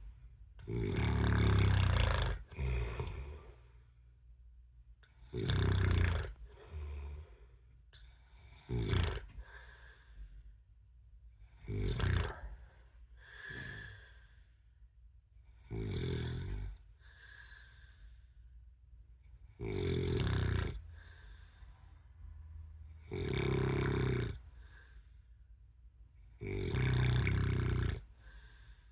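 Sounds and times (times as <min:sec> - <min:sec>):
man snoring: 0:00.6 - 0:03.6, 0:05.2 - 0:07.3, 0:08.4 - 0:09.6, 0:11.5 - 0:12.6, 0:13.3 - 0:14.2, 0:15.6 - 0:16.8, 0:19.6 - 0:21.0, 0:23.0 - 0:24.4, 0:26.4 - 0:28.2
soft breath: 0:06.4 - 0:08.5, 0:09.2 - 0:10.7, 0:12.2 - 0:14.9, 0:16.9 - 0:18.7, 0:20.8 - 0:22.9, 0:24.4 - 0:25.6, 0:28.0 - 0:28.9.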